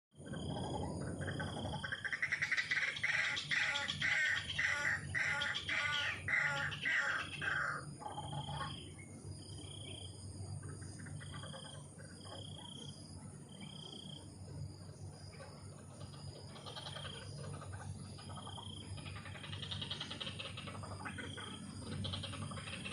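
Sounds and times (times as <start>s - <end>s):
loud rough bird calls: 0.3s - 9.0s, 15.3s - 22.9s.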